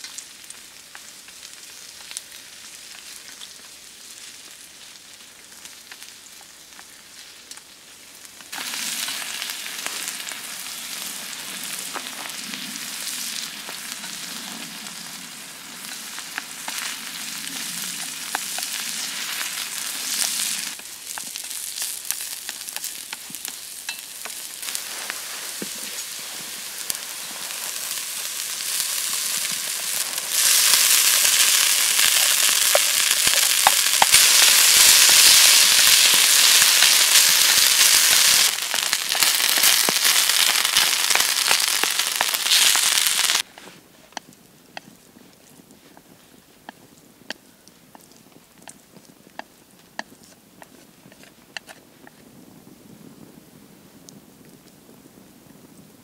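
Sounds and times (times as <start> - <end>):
food sizzling in a pan: 0.0 - 43.5
small pops and spits: 44.2 - 52.1.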